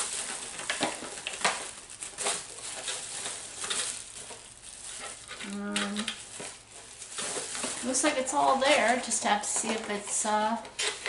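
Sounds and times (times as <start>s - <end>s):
packaging rustling and crinkling: 0.0s - 11.0s.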